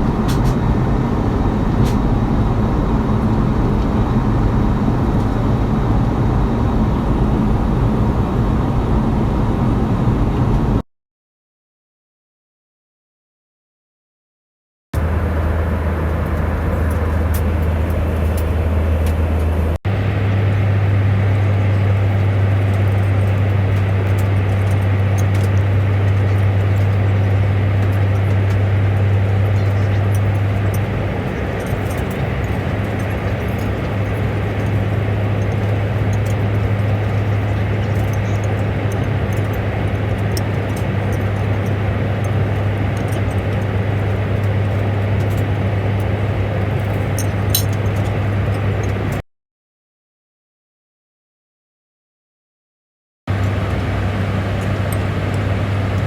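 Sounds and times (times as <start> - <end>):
vehicle interior drone: 0.0 - 10.8, 15.0 - 49.2, 53.3 - 56.0.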